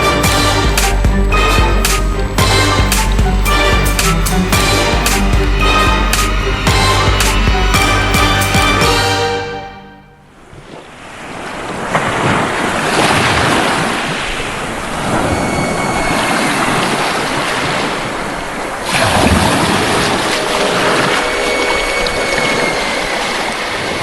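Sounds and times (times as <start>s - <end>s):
waves rushing over microphone: 10.2s - 24.0s.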